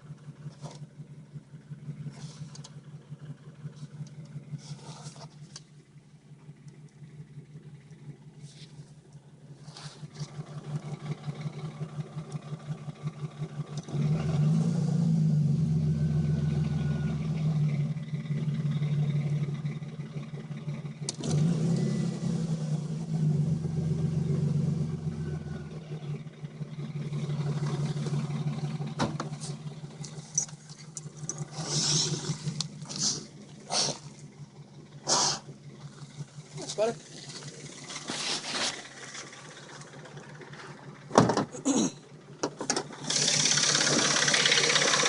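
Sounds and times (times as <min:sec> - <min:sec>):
car engine revving: 0:09.7 - 0:41.3, 0:42.4 - 0:45.0
fast rhythmic engine ticking: 0:10.3 - 0:13.9, 0:25.4 - 0:41.2, 0:42.0 - 0:45.0.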